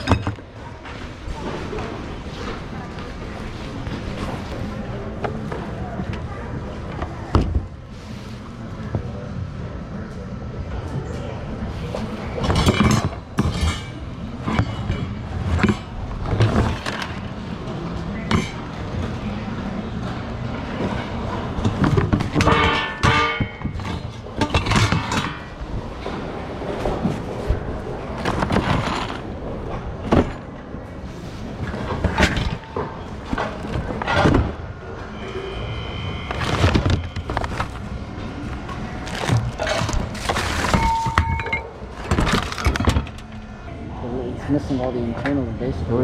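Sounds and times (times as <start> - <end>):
goods knocking and clattering in bins: 0.0 - 1.9, 6.9 - 7.8, 12.4 - 19.1, 20.7 - 30.6, 31.4 - 34.6, 38.6 - 43.3
rustle of handled goods: 36.3 - 43.0.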